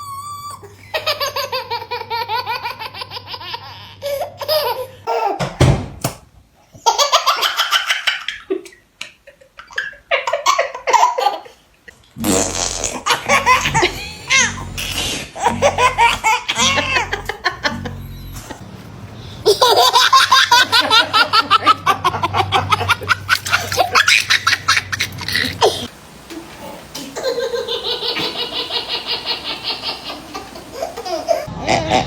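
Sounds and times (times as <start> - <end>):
baby laughing: 0.0 - 5.4, 9.6 - 11.6, 12.9 - 14.7, 15.4 - 18.0, 19.4 - 25.9, 26.9 - 32.0.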